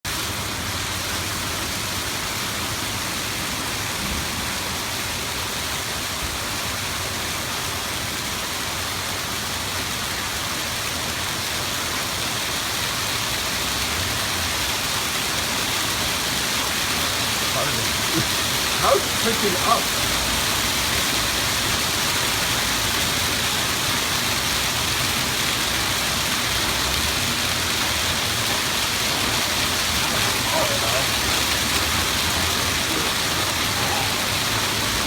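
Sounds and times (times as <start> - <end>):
hail coming down hard: 12.4 - 35.0.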